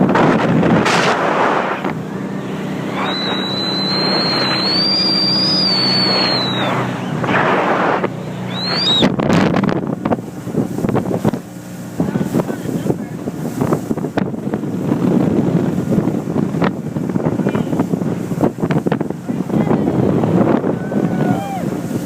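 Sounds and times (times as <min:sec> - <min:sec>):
speedboat engine: 0:00.0 - 0:22.0
wind and water rush: 0:00.0 - 0:22.0
short rising and falling tone: 0:00.8 - 0:09.5.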